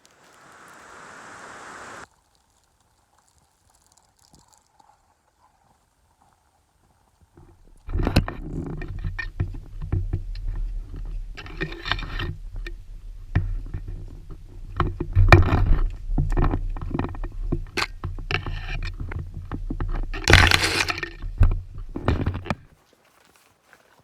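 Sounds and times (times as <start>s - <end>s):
rustling bursts: 0.0s - 4.7s
microphone handling noise: 7.6s - 22.7s.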